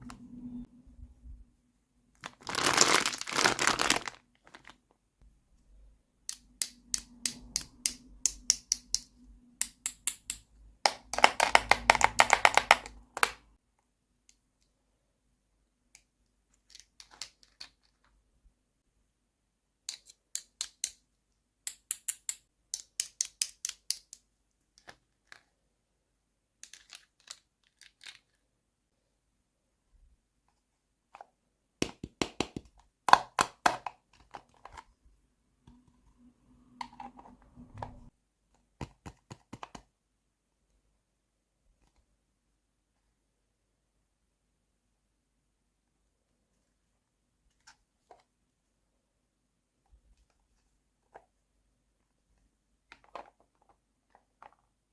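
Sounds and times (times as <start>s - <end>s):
plastic packaging crinkling: 2.2s - 4.8s.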